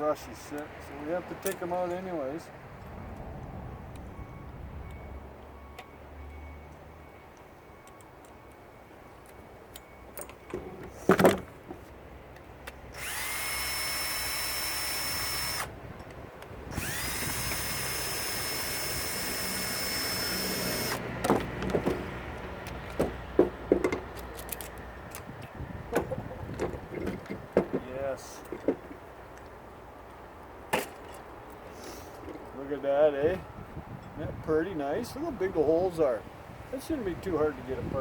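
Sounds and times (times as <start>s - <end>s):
metal parts clicking and clanking: 9.3s - 11.5s, 22.7s - 27.5s
power drill running: 12.9s - 15.8s, 16.7s - 21.0s.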